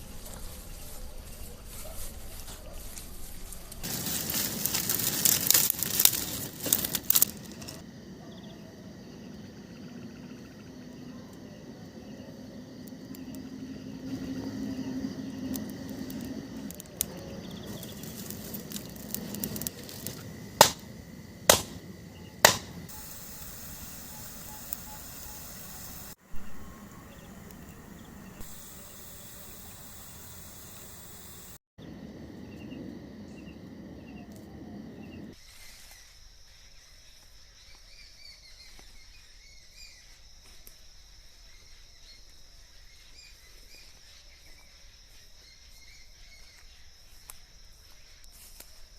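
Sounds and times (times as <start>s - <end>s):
faint forest ambience: 0.0s - 48.9s
insects chirping: 0.0s - 48.9s
sharp knocks: 21.5s - 21.8s, 22.4s - 22.8s.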